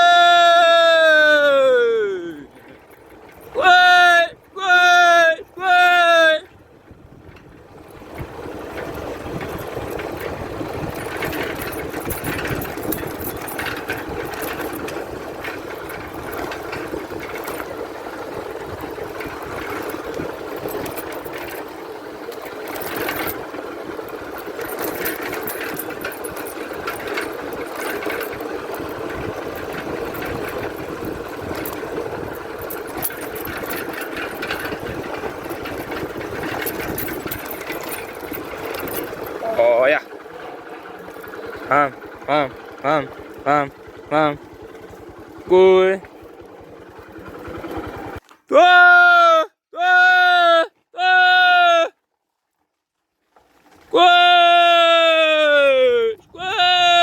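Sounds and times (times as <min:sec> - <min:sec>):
small engine running: 0:07.2 - 0:48.4.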